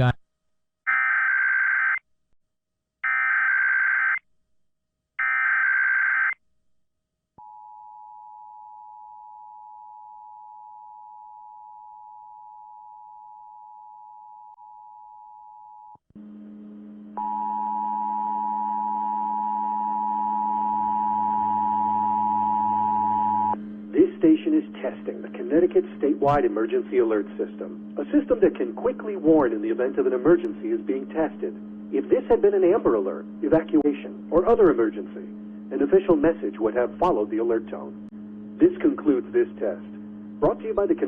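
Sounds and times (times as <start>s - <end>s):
hum and static: 0.0s - 0.2s, 8.5s - 41.0s.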